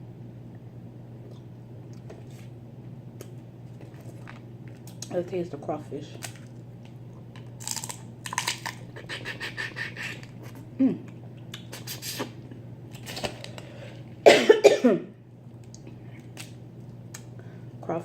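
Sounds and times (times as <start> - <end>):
wet smacking and sucking while eating: 8.8 - 12.6
throaty cough or burp: 14.2 - 15.1.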